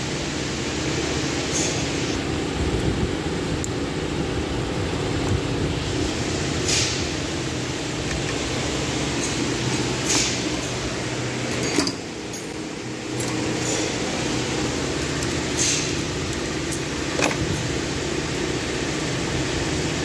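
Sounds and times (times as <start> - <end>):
steady mechanical hum: 0.0 - 20.0
hand tools clicking on metal: 11.5 - 13.8.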